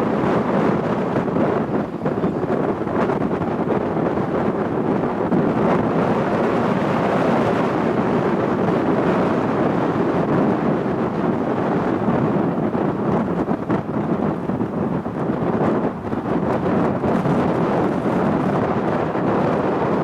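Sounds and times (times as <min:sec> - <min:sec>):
loud jet engine noise: 0:00.0 - 0:20.0
wind buffeting microphone: 0:00.0 - 0:20.0.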